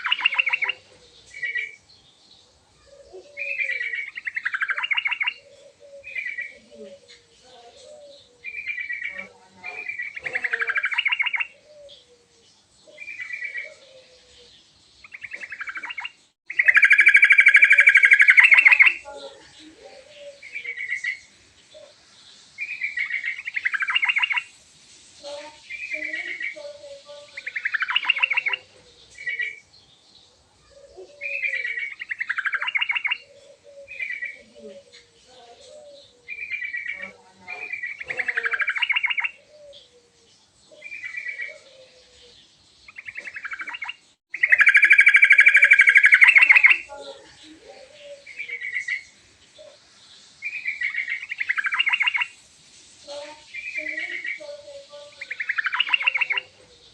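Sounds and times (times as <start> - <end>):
bulbul singing bubbly phrases: 0.0 - 1.8, 7.6 - 12.0, 15.0 - 21.2, 25.2 - 29.6, 31.2 - 35.7, 36.4 - 39.9, 42.9 - 49.0, 50.5 - 52.4, 53.0 - 56.6.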